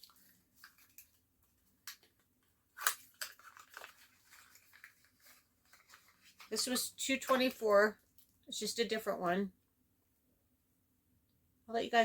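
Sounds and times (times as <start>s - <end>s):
plastic packaging clicks and crinkles: 0.0s - 8.4s.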